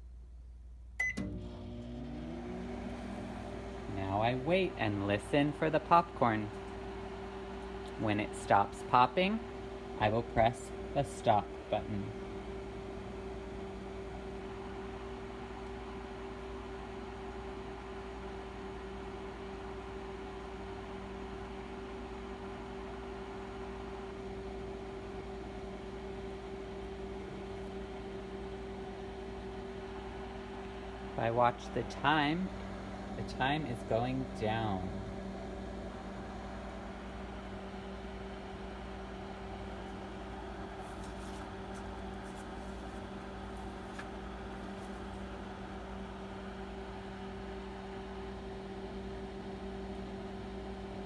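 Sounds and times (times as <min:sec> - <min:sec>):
microwave oven humming: 0:00.8 - 0:51.0.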